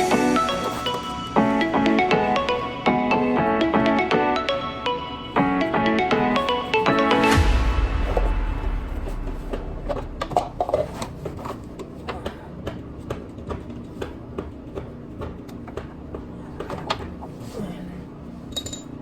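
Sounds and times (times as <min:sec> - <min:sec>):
music sting: 0:00.0 - 0:11.3.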